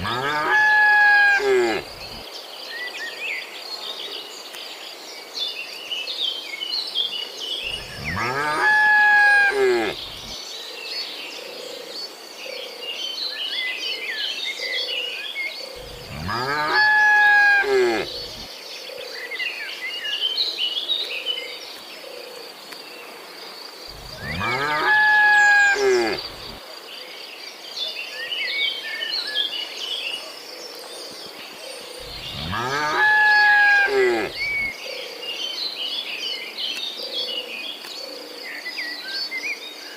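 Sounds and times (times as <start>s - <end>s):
birds chirping: 0.0s - 2.2s, 7.6s - 10.4s, 15.7s - 18.5s, 23.9s - 26.6s, 31.8s - 34.7s
cow mooing: 0.0s - 2.2s, 7.7s - 10.3s, 15.8s - 18.5s, 23.9s - 26.6s, 32.0s - 34.7s
high insect drone: 23.8s - 26.6s.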